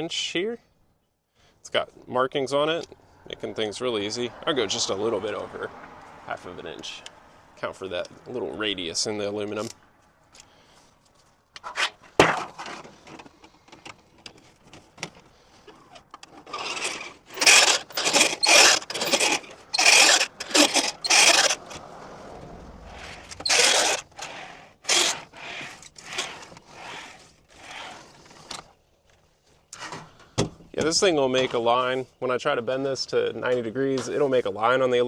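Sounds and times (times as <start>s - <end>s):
metallic scraping strokes: 16.4s - 28.2s.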